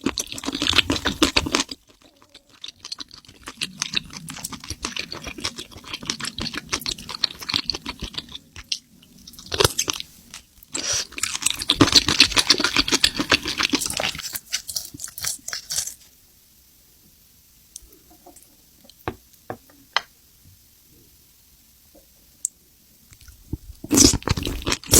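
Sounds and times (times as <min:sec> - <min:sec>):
person chewing crunchy food: 0:00.0 - 0:16.1, 0:23.2 - 0:24.9.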